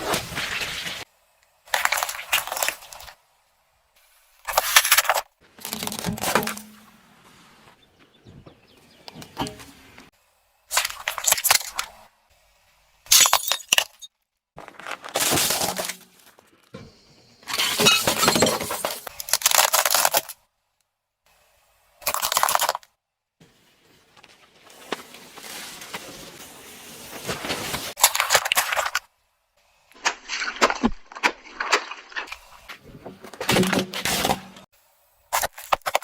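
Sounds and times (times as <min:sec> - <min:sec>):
objects crunching under car tyre: 0:04.5 - 0:08.1, 0:14.6 - 0:16.8, 0:30.0 - 0:34.7.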